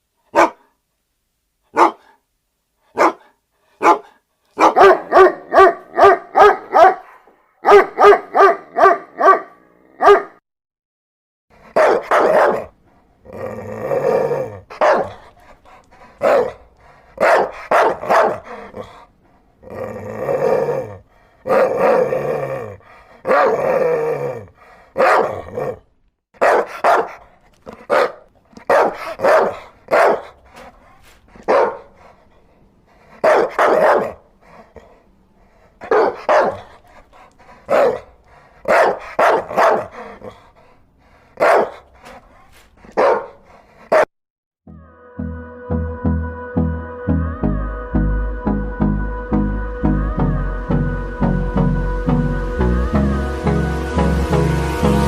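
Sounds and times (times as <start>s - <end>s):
background hiss: 0.0s - 8.2s, 11.6s - 23.8s, 26.5s - 43.0s
deeper dog barks: 0.3s - 0.8s, 1.7s - 2.2s, 2.9s - 10.4s, 11.6s - 12.8s, 13.4s - 19.0s, 19.7s - 25.8s, 26.4s - 32.3s, 33.0s - 35.0s, 35.8s - 44.1s
dog barking: 0.3s - 0.8s, 1.7s - 2.2s, 2.9s - 10.4s, 11.6s - 12.8s, 14.7s - 15.3s, 16.2s - 16.6s, 17.2s - 19.0s, 23.2s - 23.7s, 25.0s - 25.8s, 26.4s - 30.7s, 31.4s - 32.1s, 33.1s - 35.0s, 35.8s - 36.8s, 37.7s - 40.4s, 41.4s - 42.1s, 42.8s - 44.1s.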